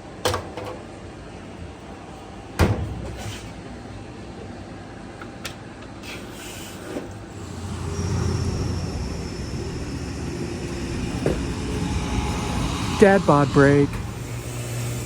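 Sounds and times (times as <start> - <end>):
thin high whine: 7.3 - 15.0
washing machine spinning rumble: 7.3 - 15.0.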